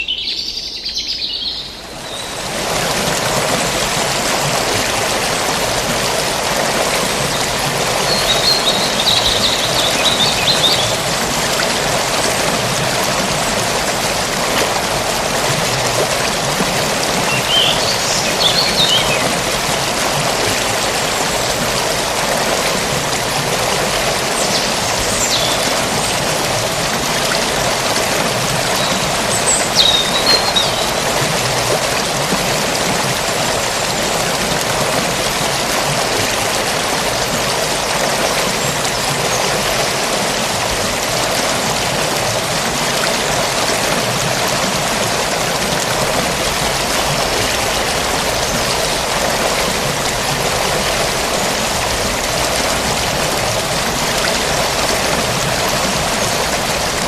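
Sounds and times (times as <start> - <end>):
small birds chirping: 0.0 - 2.4, 8.1 - 11.0, 24.4 - 25.8, 28.8 - 31.0
stream flowing: 0.0 - 57.0.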